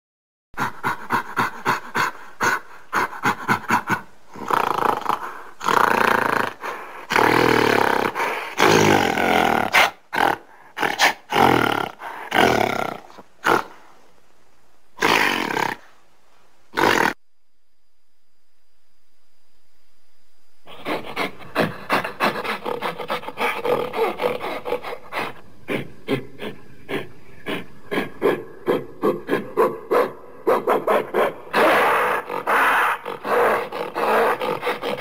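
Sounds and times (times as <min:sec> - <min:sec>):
gorilla roars: 0:00.6 - 0:13.8, 0:15.0 - 0:15.9, 0:16.7 - 0:17.2, 0:20.7 - 0:35.0
gorilla short calls: 0:31.5 - 0:35.0.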